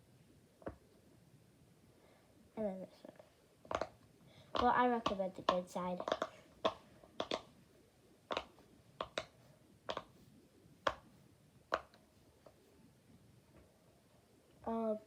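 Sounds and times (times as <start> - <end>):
fidget toy bubbles popping: 6.1 - 7.5.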